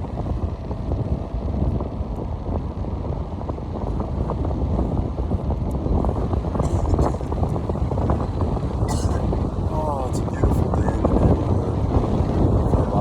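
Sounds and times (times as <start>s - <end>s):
car driving rumble: 0.0s - 13.0s
wind buffeting microphone: 0.0s - 13.0s.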